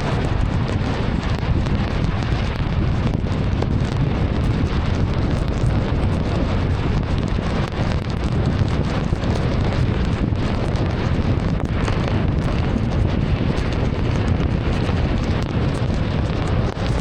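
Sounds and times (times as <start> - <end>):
heavy rain on a car: 0.0 - 17.0.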